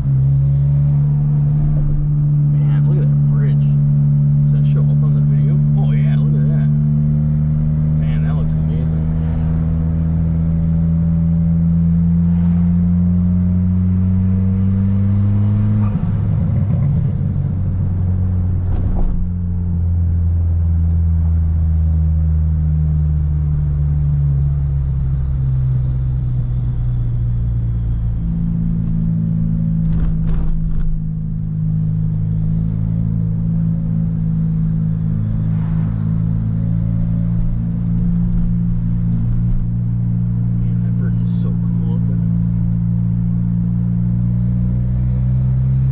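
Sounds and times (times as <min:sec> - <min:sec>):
car engine: 0:00.0 - 0:45.9
road noise inside car: 0:00.0 - 0:45.9.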